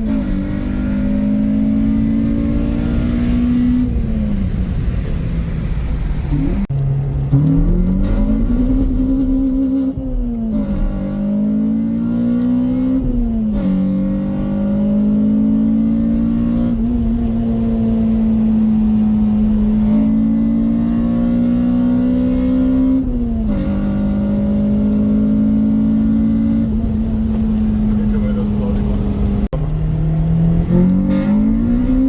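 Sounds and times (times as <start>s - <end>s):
car engine accelerating hard: 0.0s - 32.0s.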